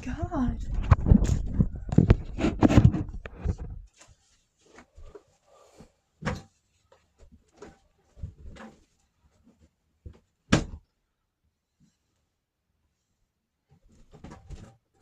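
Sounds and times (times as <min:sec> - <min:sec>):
close handling noise: 0:00.6 - 0:10.9.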